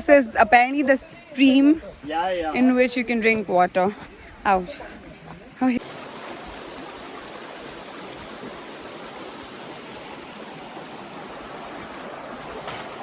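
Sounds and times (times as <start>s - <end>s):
stream flowing over rocks: 5.7s - 13.0s.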